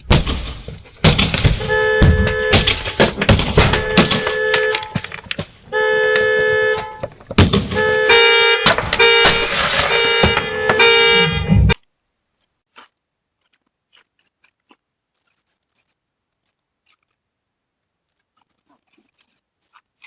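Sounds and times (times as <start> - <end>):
car horn honking: 1.4 - 11.8.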